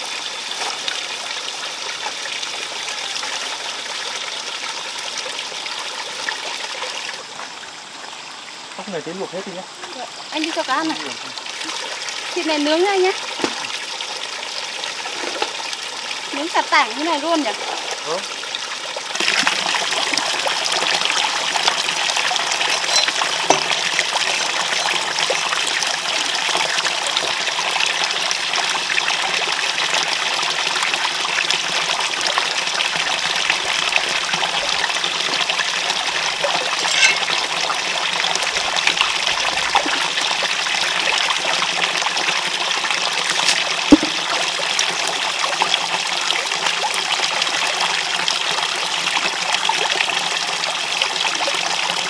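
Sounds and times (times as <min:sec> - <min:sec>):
running water trickling: 0:00.0 - 0:52.0.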